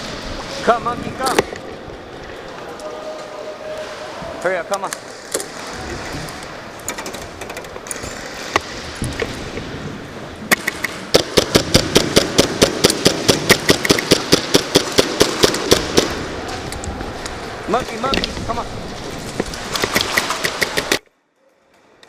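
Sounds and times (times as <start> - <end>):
airsoft gun shots: 10.5 - 16.2.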